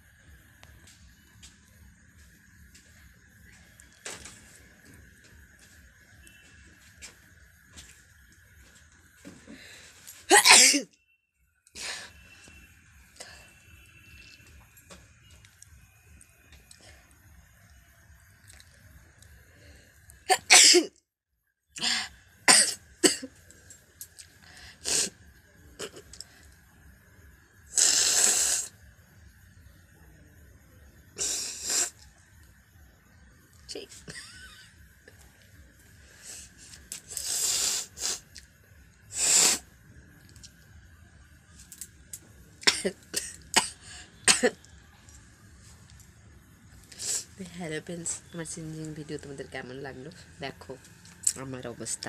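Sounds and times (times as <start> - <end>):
woman coughing: 10.3 - 10.9, 20.3 - 20.9, 22.5 - 23.3, 42.6 - 44.6
woman sneezing: 10.3 - 10.9, 20.3 - 20.9.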